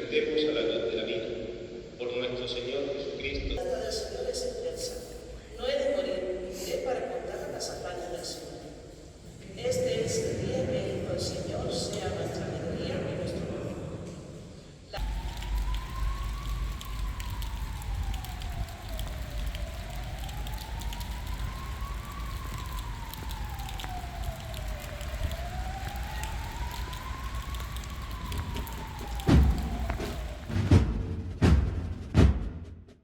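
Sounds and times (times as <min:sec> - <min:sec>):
steady rain: 0:03.6 - 0:31.9
emergency vehicle siren wailing: 0:15.0 - 0:31.2.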